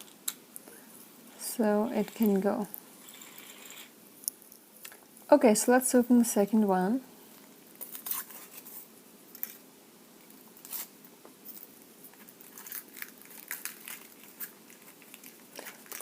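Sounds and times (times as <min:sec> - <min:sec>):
foil wrapper crackling: 0:12.1 - 0:16.0.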